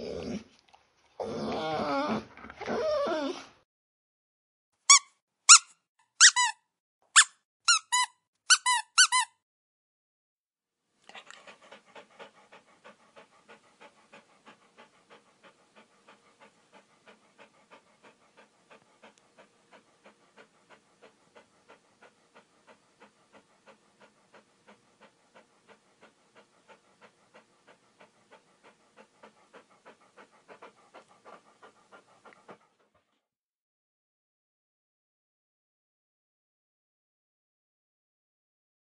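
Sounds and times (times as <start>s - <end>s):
dog panting: 11.0s - 33.3s.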